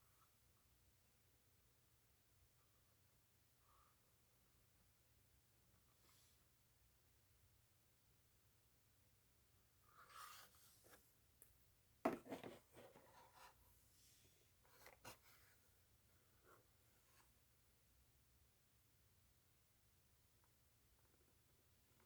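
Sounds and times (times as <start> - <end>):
handling noise rubbing and scraping: 12.1 - 15.4.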